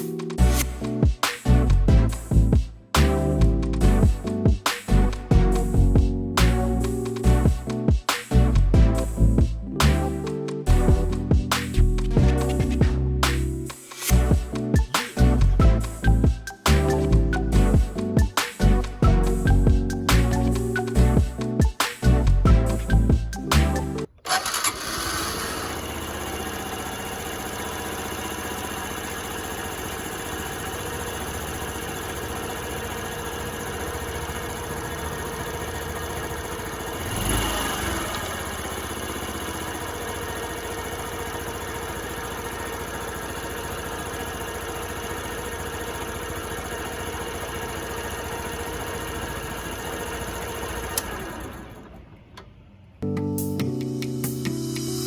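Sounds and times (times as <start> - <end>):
motorcycle engine idling: 24.3 - 52.2.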